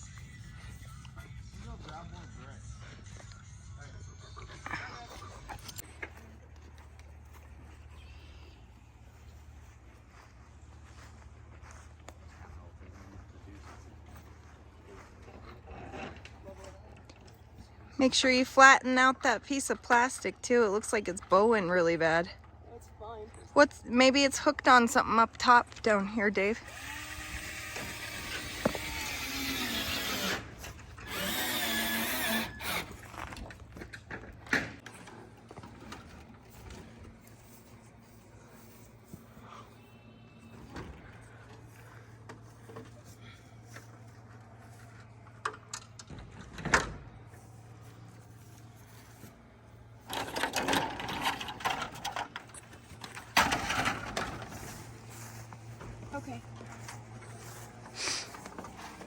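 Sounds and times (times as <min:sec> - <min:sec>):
power drill running: 0:26.6 - 0:33.1
clattering and rattling: 0:50.0 - 0:54.8.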